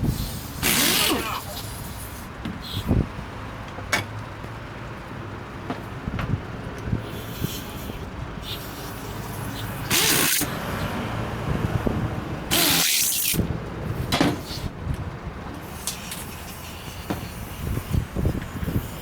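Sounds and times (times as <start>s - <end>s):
pressurised spray hiss: 7.0s - 10.5s.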